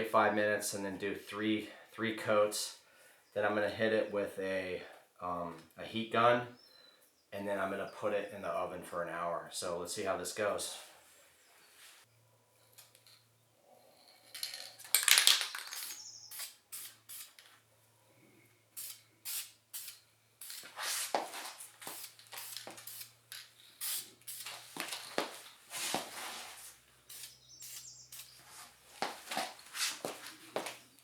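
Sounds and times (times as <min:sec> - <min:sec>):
aerosol can spraying: 0:15.7 - 0:17.4, 0:18.8 - 0:21.2, 0:21.8 - 0:23.2, 0:23.8 - 0:24.7, 0:27.1 - 0:28.4.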